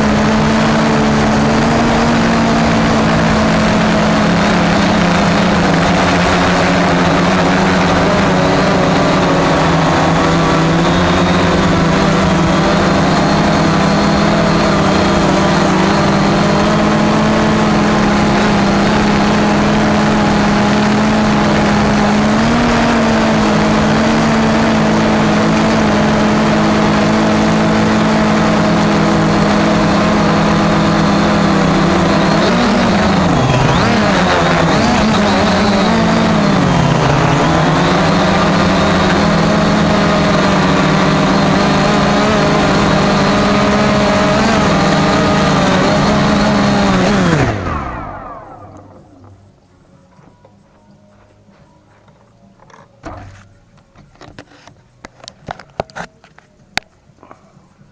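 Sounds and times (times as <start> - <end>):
drone motors humming: 0.0 - 55.9.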